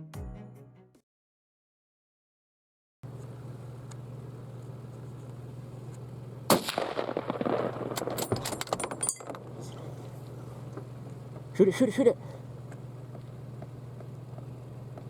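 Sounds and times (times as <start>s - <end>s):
steady low hum: 3.0s - 15.0s
rifle shot: 6.5s - 9.5s.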